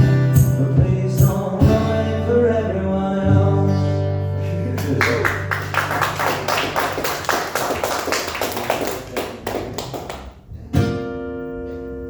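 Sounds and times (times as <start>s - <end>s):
audience applauding: 4.7s - 10.4s.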